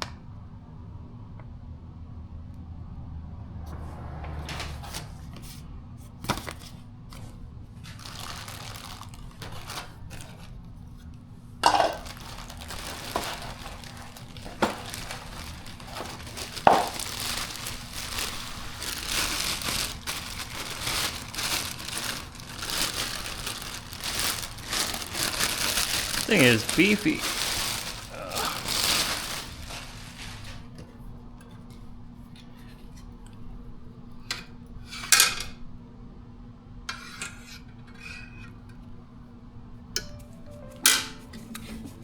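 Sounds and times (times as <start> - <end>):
packaging rustling and crinkling: 6.2 - 11.0, 11.6 - 30.7.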